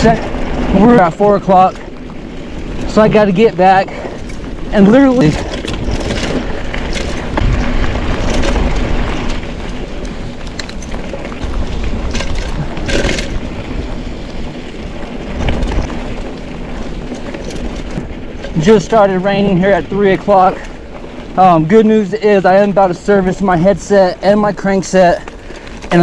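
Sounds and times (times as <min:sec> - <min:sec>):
bike rolling on dirt trail: 0:00.0 - 0:26.0
wind buffeting microphone: 0:00.0 - 0:26.0
clicks and rattles: 0:04.2 - 0:09.4.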